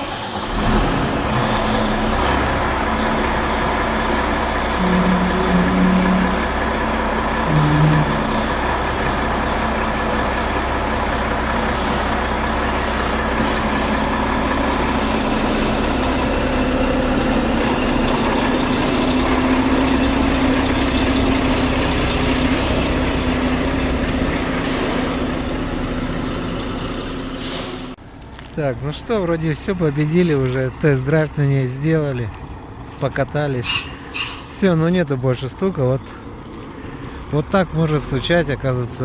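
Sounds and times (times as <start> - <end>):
diesel truck engine running: 0.0 - 39.0
short air hisses: 27.4 - 27.9.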